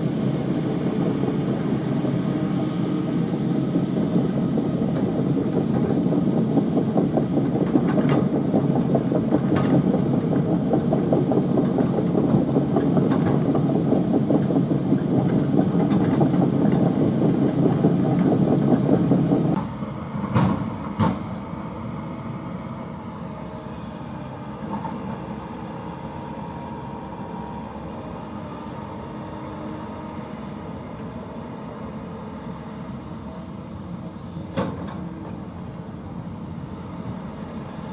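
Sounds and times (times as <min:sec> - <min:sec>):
excavator diesel engine running: 0:00.0 - 0:37.9.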